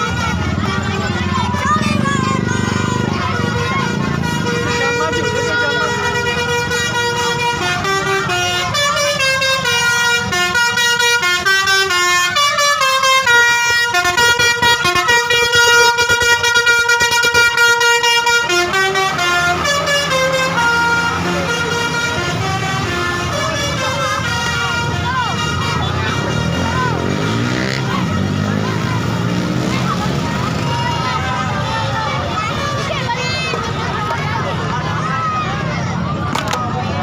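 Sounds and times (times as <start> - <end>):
musical air horns playing tune: 2.5 - 29.7.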